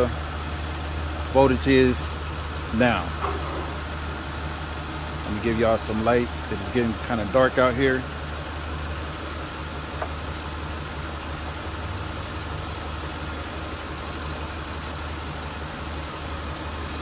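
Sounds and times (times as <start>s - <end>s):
car engine idling: 0.0s - 17.0s.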